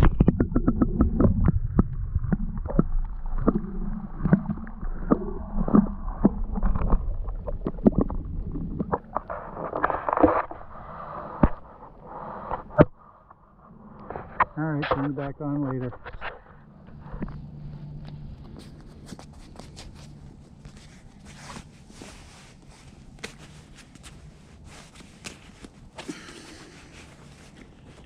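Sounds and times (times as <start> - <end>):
water sloshing and splashing: 0.0 - 12.0.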